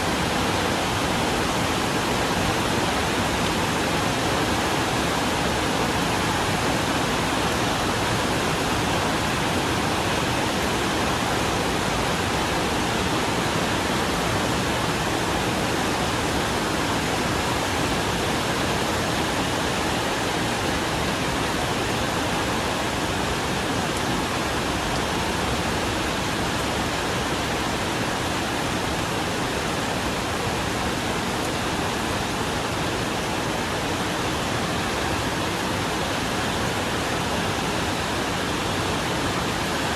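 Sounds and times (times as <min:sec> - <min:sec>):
rain on a metal roof: 0:00.0 - 0:39.9.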